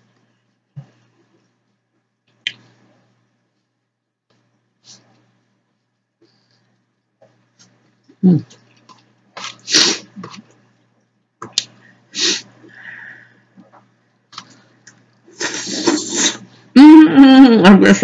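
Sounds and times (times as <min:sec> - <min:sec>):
person's hissing breath bursts: 0:12.1 - 0:12.5.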